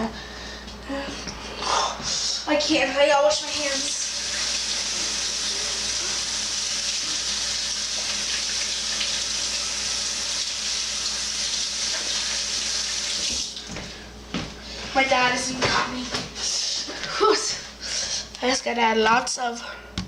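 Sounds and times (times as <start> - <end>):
tap water running into sink: 3.4 - 13.8.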